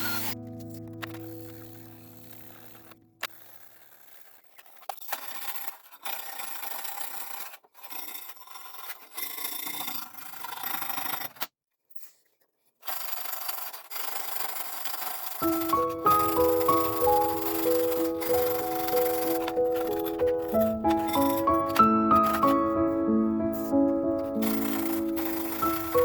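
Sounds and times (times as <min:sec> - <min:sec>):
file rasping on metal: 0:12.9 - 0:22.8, 0:24.2 - 0:26.0.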